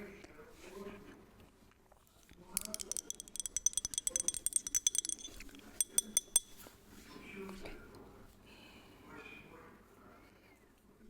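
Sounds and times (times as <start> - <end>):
tapping on glass bottle: 2.4 - 6.7.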